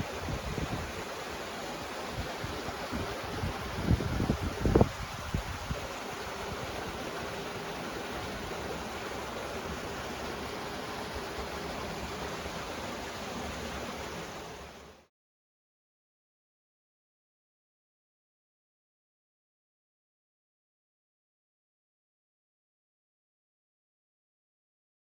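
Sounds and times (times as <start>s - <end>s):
wind buffeting microphone: 0.0s - 1.1s, 2.1s - 6.9s
rushing outdoor noise: 0.0s - 15.0s.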